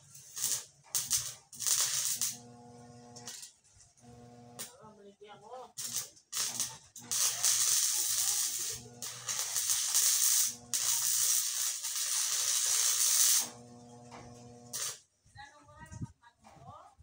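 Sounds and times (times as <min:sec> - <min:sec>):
welding arc crackling and hissing: 0:00.0 - 0:03.5, 0:04.2 - 0:04.8, 0:05.7 - 0:15.0.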